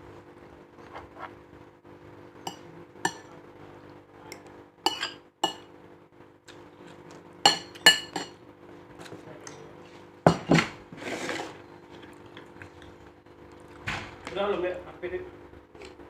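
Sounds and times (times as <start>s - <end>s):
spoon clinking against plate: 2.5s - 3.3s, 4.9s - 5.7s, 7.5s - 8.4s.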